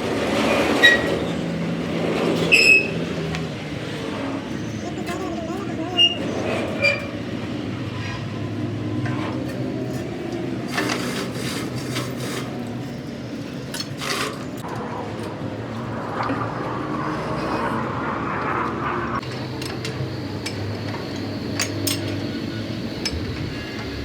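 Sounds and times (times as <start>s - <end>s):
low machine hum: 19.2s - 24.0s.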